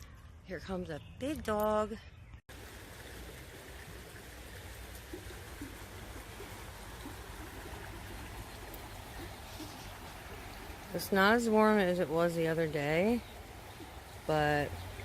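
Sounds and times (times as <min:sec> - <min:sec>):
stream water rushing: 0:02.5 - 0:15.0.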